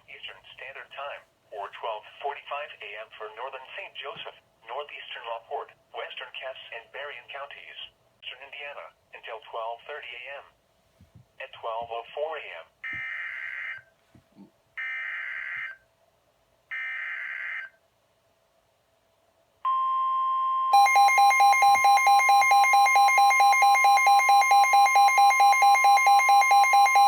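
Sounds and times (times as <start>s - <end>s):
steady alarm tone: 14.8s - 15.8s, 19.7s - 27.0s
rapid pulsing alert beep: 20.8s - 27.0s.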